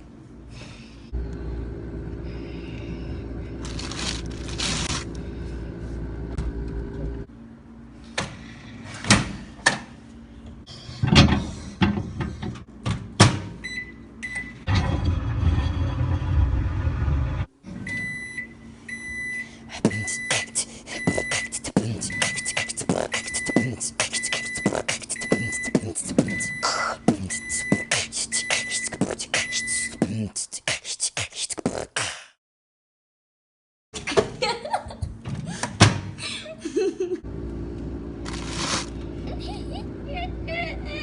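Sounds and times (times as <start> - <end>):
microwave oven humming: 0.0 - 30.0, 34.0 - 41.0
beatboxing mouth clicks: 19.8 - 32.4
high beeps: 21.0 - 26.7.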